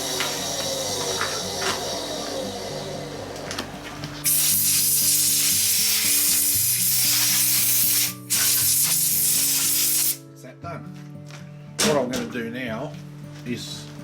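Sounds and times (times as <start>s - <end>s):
background music with melody: 0.0s - 14.0s
loud steady hiss: 4.2s - 10.2s.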